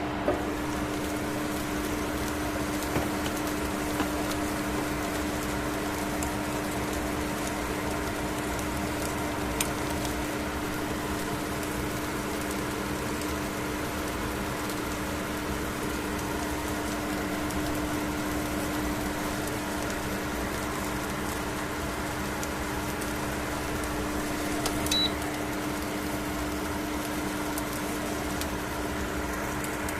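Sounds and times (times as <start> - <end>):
microwave oven humming: 0.0 - 29.9
high beep: 24.9 - 25.2.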